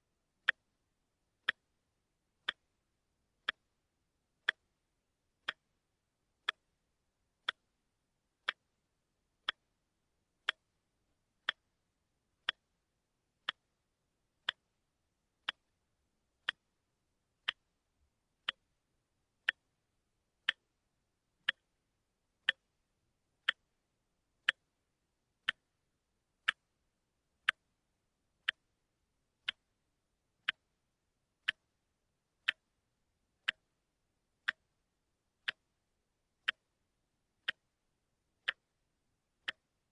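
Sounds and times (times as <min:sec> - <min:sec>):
watch ticking: 0:00.4 - 0:00.8, 0:01.4 - 0:01.8, 0:02.4 - 0:02.8, 0:03.4 - 0:03.8, 0:04.4 - 0:04.8, 0:05.4 - 0:06.8, 0:07.4 - 0:08.8, 0:09.4 - 0:10.8, 0:11.4 - 0:11.8, 0:12.4 - 0:14.8, 0:15.4 - 0:16.8, 0:17.4 - 0:17.8, 0:18.4 - 0:18.8, 0:19.4 - 0:19.8, 0:20.4 - 0:20.8, 0:21.4 - 0:21.8, 0:22.4 - 0:22.8, 0:23.4 - 0:23.8, 0:24.4 - 0:24.8, 0:25.4 - 0:25.8, 0:26.4 - 0:29.8, 0:30.4 - 0:30.8, 0:31.4 - 0:39.9.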